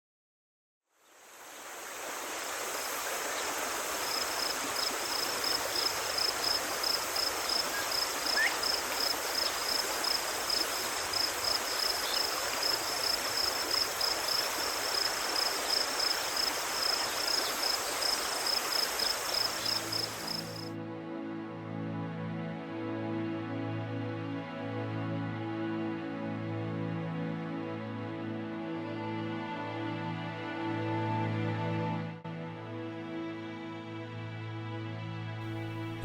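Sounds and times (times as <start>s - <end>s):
running water: 1.0s - 20.7s
pulsing insect trill: 3.4s - 20.7s.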